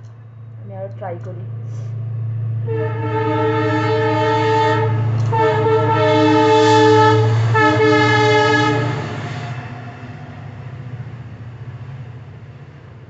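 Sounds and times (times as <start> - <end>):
train rumble: 0.0 - 13.0
train horn blasts: 2.5 - 9.3.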